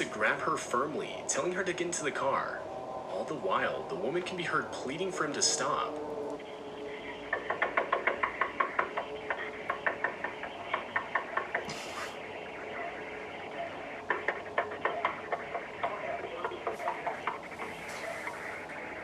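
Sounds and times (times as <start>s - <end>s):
rapid knocking on a door: 7.2s - 11.7s.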